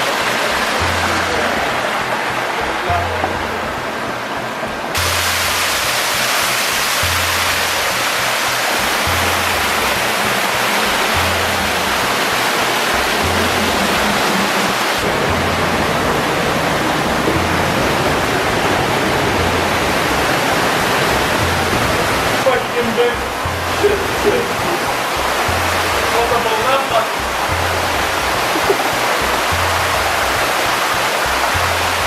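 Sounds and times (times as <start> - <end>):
background music with bass pulse: 0.0 - 32.0
waterfall rushing: 0.0 - 32.0.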